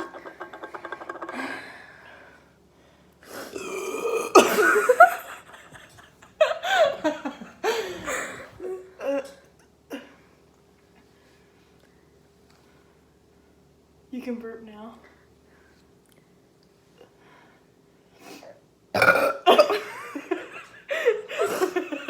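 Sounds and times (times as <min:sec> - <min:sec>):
person burping: 0:03.5 - 0:05.0, 0:19.0 - 0:19.8.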